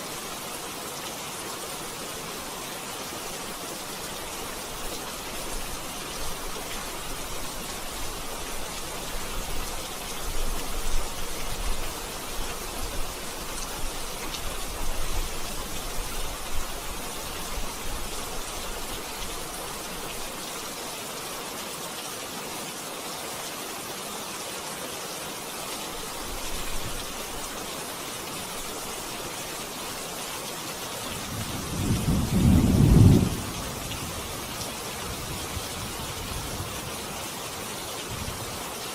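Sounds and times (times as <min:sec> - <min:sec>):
steady rain falling: 0:00.0 - 0:38.9
thunder rumbling: 0:31.3 - 0:34.3.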